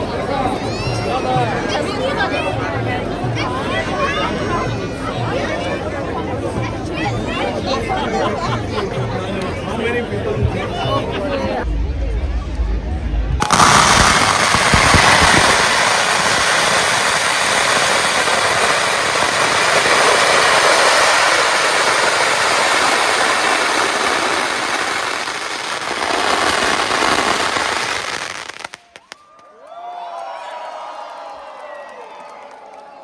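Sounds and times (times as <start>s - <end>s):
faint voices: 0.0s - 28.7s
fireworks crackling: 13.4s - 29.5s.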